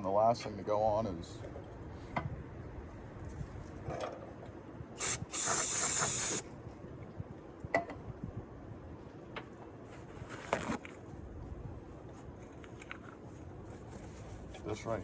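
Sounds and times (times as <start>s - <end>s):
aerosol spray can hissing: 5.0s - 6.4s.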